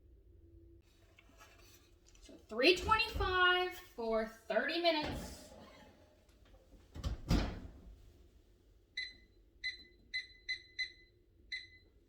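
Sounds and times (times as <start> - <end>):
kitchen timer beeping: 9.0 - 12.0.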